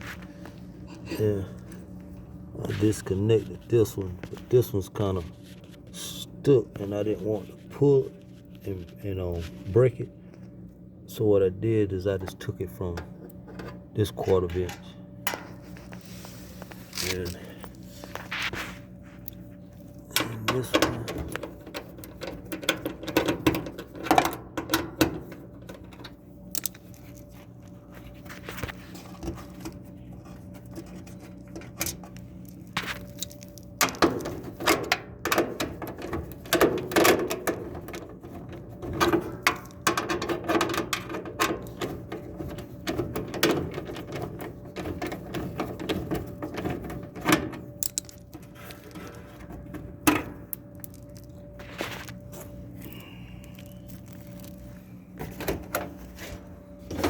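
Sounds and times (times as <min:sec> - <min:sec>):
steady low hum: 0:00.0 - 0:57.0
hand tools clicking and rattling: 0:31.8 - 0:51.4.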